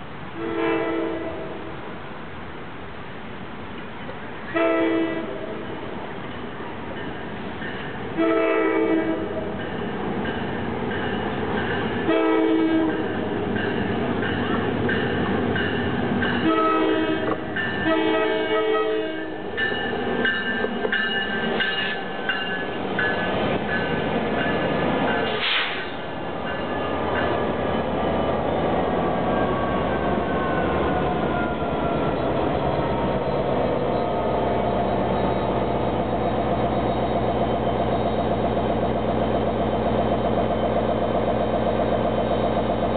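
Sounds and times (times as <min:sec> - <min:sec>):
train rolling past: 0:00.0 - 0:42.9
locomotive air horn: 0:00.4 - 0:01.7, 0:04.5 - 0:05.6, 0:08.2 - 0:09.5, 0:12.0 - 0:13.1, 0:16.4 - 0:19.5.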